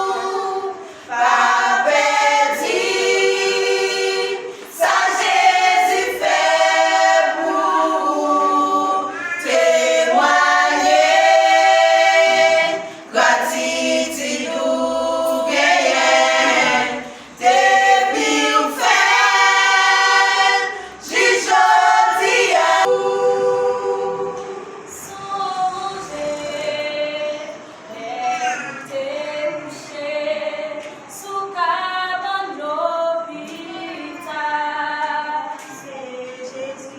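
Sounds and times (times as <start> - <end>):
choir singing a cappella: 0.0 - 36.9
choir breaths: 0.4 - 6.6, 11.8 - 13.2, 15.6 - 18.9, 19.7 - 26.6.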